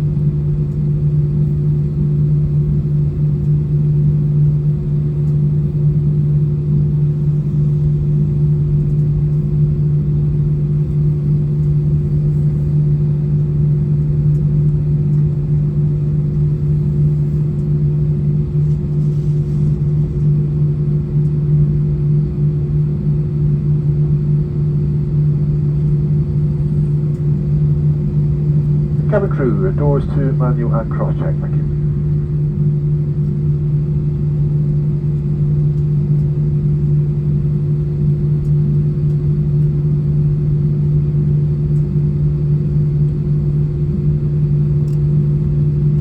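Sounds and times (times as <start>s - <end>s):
constant low hum: 0.0s - 46.0s
airplane cabin rumble: 26.3s - 35.1s.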